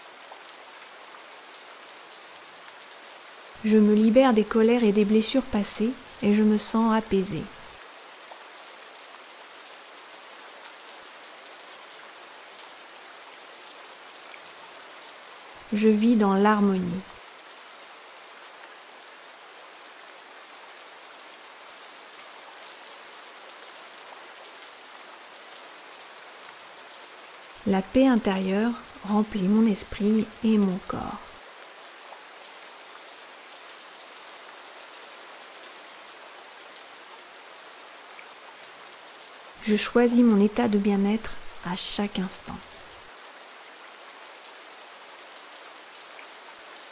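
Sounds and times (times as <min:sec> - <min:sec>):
steady rain hissing: 0:00.0 - 0:46.9.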